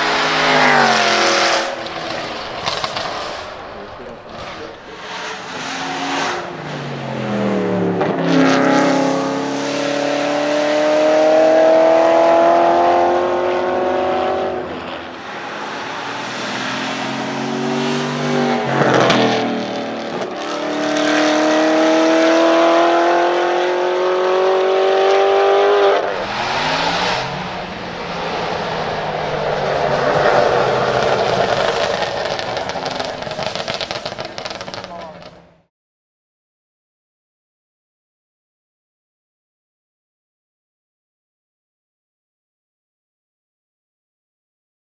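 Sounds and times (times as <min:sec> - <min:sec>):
car engine accelerating: 0:00.0 - 0:35.7
exhaust crack at gear shift: 0:00.1 - 0:04.9, 0:26.1 - 0:35.6.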